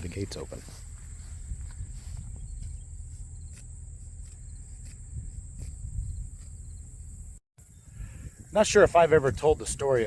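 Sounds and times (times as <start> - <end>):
crickets trilling: 0.9 - 8.6.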